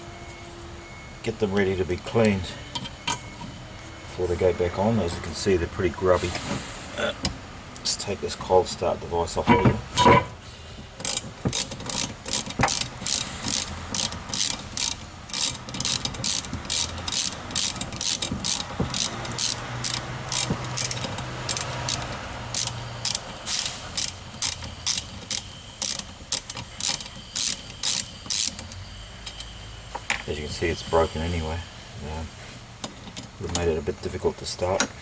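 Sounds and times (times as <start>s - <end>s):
socket ratchet clicking: 11.0s - 28.8s.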